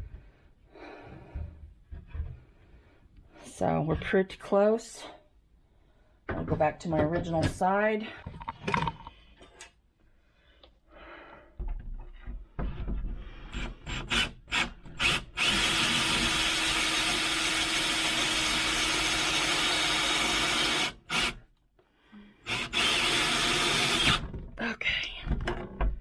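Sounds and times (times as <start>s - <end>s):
power drill whining through wood: 13.5s - 21.4s, 22.4s - 24.3s
drill knocks: 22.5s - 24.4s.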